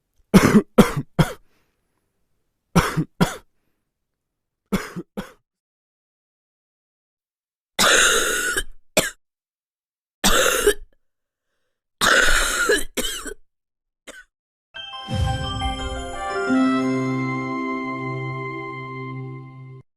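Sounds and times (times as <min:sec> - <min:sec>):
person coughing: 0:00.3 - 0:01.5, 0:02.8 - 0:03.5, 0:04.7 - 0:05.4, 0:07.8 - 0:09.2, 0:10.2 - 0:11.0, 0:12.0 - 0:13.4
music: 0:14.8 - 0:19.9.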